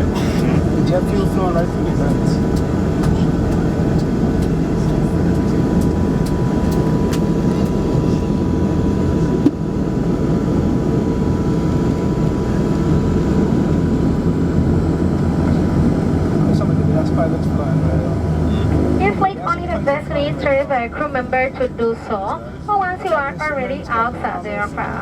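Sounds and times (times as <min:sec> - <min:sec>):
turboprop engines droning: 0:00.0 - 0:25.0.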